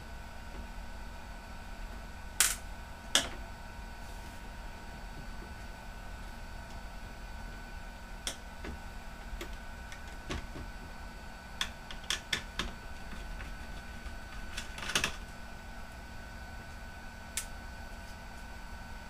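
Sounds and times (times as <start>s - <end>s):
faint hum: 0.0s - 19.0s.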